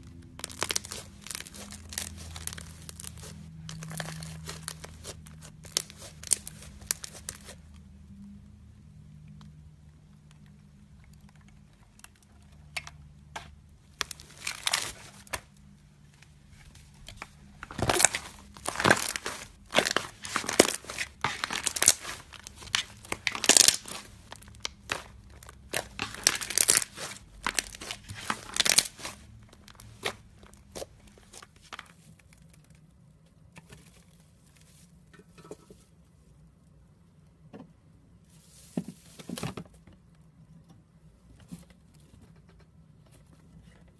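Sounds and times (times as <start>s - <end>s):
slime crackling and squelching: 0.0s - 7.7s, 13.6s - 15.6s, 16.6s - 33.1s.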